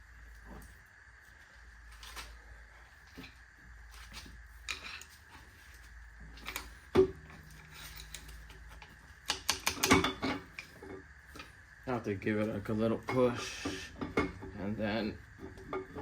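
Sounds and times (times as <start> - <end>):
faint high whine: 0.0 - 16.0
tools and engine parts clicking: 6.4 - 11.5.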